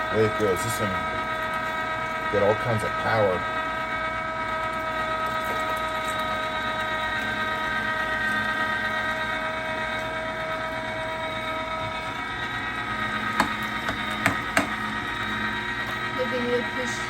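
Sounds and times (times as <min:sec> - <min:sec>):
electric meat grinder whining: 0:00.0 - 0:17.0
sharp knocks: 0:13.4 - 0:14.9.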